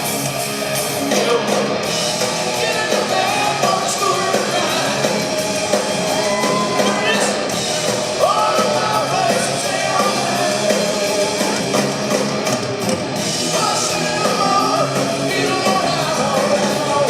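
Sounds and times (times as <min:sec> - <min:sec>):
electric guitar: 0:00.0 - 0:17.0
hard rock band playing live: 0:00.0 - 0:17.0
person singing: 0:02.5 - 0:11.9, 0:13.4 - 0:17.0.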